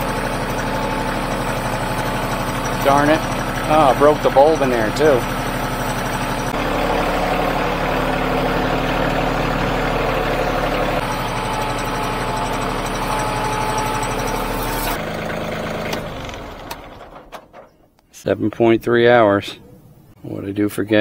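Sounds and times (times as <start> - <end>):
diesel tractor engine idling: 0.0 - 18.0.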